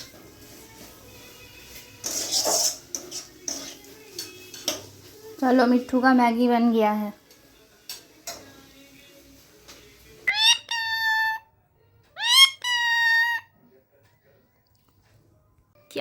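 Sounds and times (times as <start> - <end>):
parrot calling: 10.2 - 11.5, 12.2 - 13.5.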